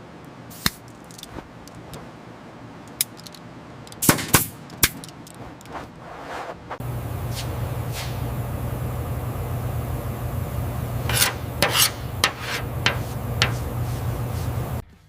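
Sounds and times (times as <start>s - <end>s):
low motor hum: 6.8s - 14.8s
rough rubbing rasping noise: 10.9s - 14.8s.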